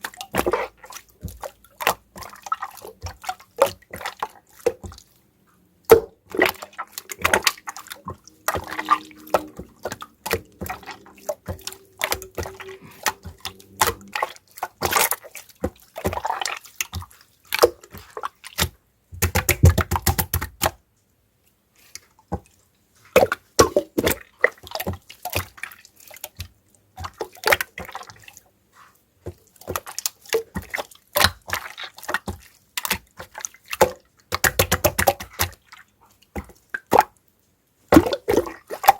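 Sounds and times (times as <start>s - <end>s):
slime squishing wet clicks: 0.0s - 5.1s, 5.8s - 20.8s, 29.3s - 37.2s.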